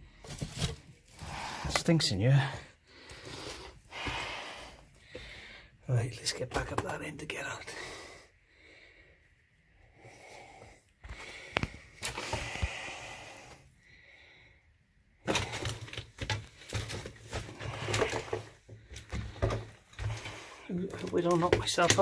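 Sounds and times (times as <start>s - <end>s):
man breathing heavily: 2.4s - 5.8s, 7.7s - 14.8s
scuffs and knocks: 15.3s - 22.0s.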